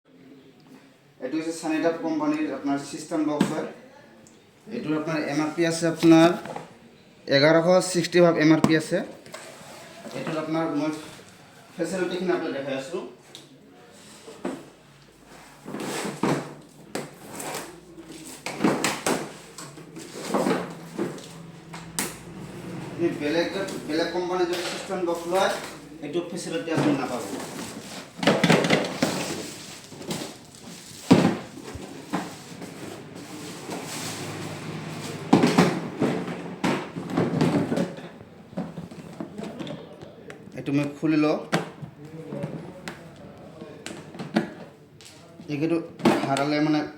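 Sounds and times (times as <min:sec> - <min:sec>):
plastic sliding scrapes: 0:09.2 - 0:11.5, 0:13.9 - 0:39.6
plastic clacks and knocks: 0:26.8 - 0:32.8.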